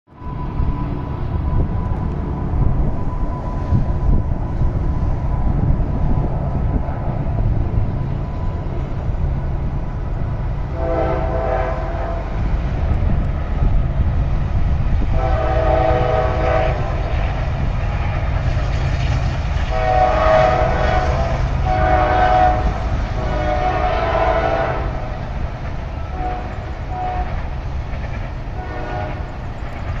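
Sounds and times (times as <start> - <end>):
low rumble of locomotives: 0.1 - 30.0
rolling freight cars: 0.1 - 30.0
train horn blasts: 10.7 - 12.7, 15.0 - 17.4, 19.6 - 25.3, 25.9 - 27.7, 28.5 - 29.4.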